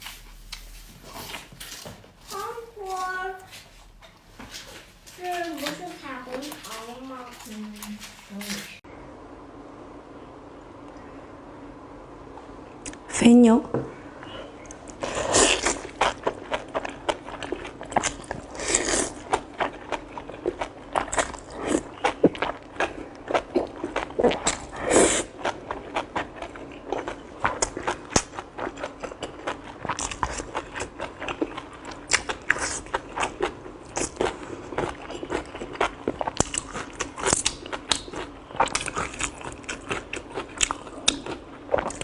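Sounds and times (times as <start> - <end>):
person chewing and biting: 14.8 - 42.0.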